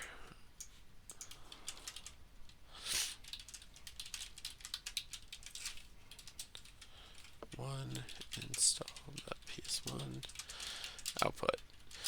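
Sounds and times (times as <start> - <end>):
computer keyboard typing: 0.6 - 2.2, 3.0 - 12.0
short hiss: 2.8 - 3.2.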